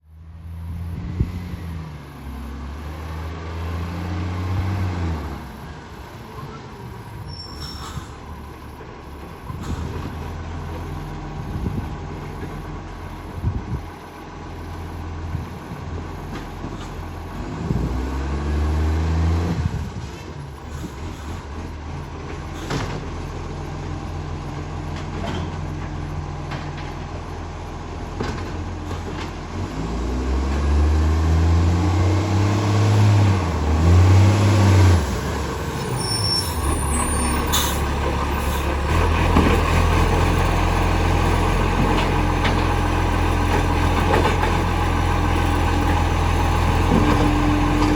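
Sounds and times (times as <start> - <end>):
garbage truck engine revving: 0.2 - 47.9
air brake hisses: 7.2 - 8.4, 9.5 - 10.2, 22.5 - 23.0, 35.8 - 38.8.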